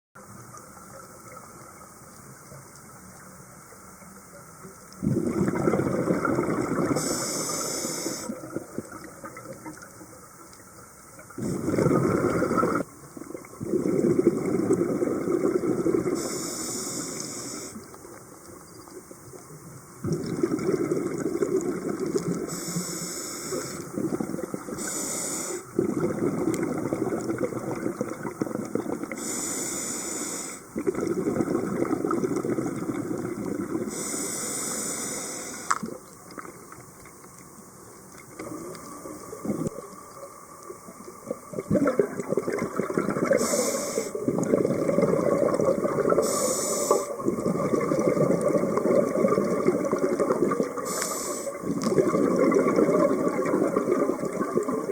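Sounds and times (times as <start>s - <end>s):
regulator hissing inhalations: 7.0s - 8.3s, 16.2s - 17.8s, 22.4s - 23.9s, 24.8s - 25.7s, 29.1s - 30.7s, 33.9s - 35.8s, 43.3s - 44.2s, 46.1s - 47.2s, 50.8s - 51.6s.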